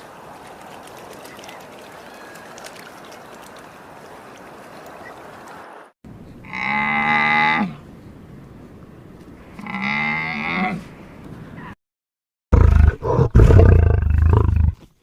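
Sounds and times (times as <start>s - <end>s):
cow mooing: 6.4s - 7.8s, 9.6s - 10.8s.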